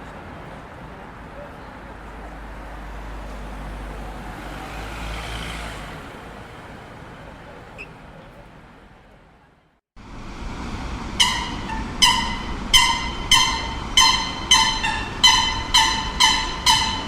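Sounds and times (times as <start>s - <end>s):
city background noise: 0.0s - 17.0s
bell ringing: 11.2s - 17.0s.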